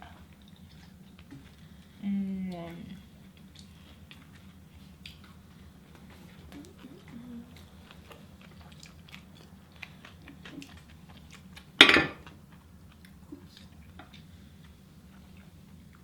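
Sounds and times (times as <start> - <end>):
people chewing food: 0.0 - 16.0.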